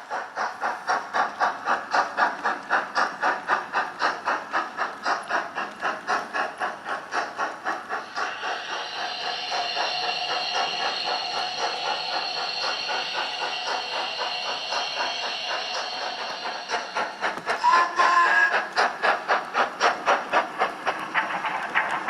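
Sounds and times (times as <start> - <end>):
steady hiss of steam: 0.0 - 22.0
steam locomotive exhaust chuffs: 0.0 - 22.0.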